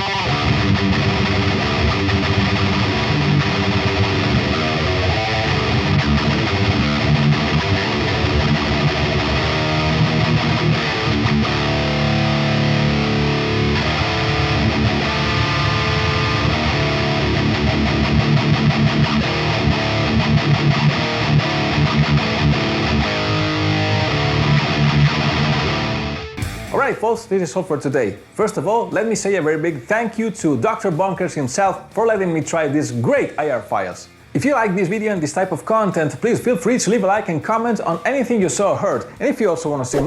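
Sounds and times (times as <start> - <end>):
distorted electric guitar riff: 0.0 - 27.4.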